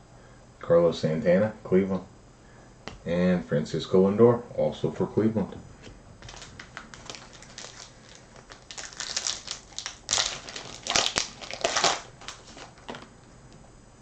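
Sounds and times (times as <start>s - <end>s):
card pack wrapper crinkling: 6.2s - 13.1s.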